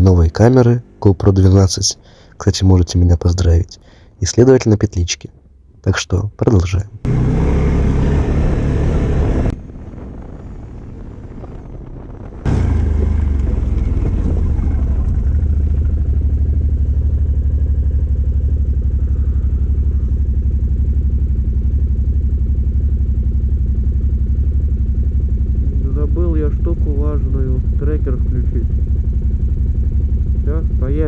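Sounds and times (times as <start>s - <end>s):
atv engine idling: 12.5s - 31.0s.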